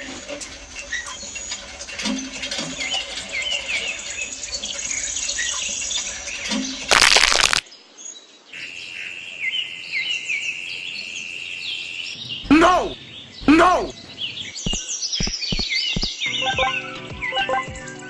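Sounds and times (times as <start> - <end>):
birds chirping: 11.8 - 16.5.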